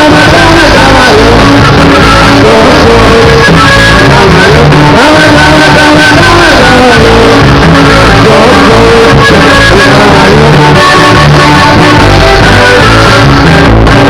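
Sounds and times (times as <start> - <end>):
loud norteno music: 0.0 - 14.0.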